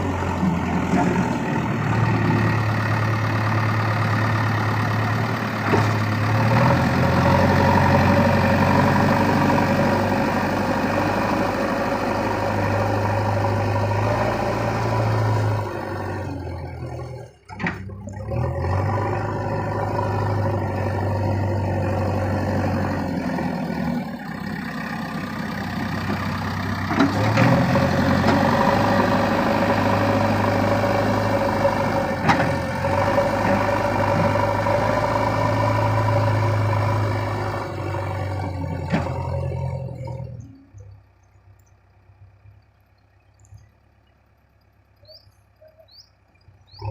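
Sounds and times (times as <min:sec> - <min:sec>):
diesel engine running: 0:00.0 - 0:46.9.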